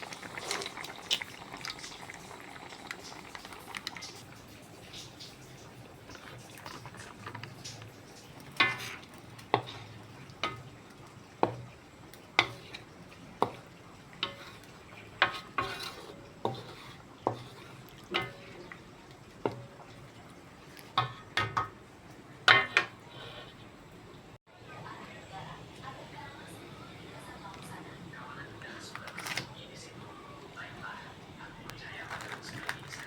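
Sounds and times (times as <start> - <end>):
metal utensil clanking in pot: 8.5 - 10.7, 14.2 - 18.8, 22.5 - 23.4.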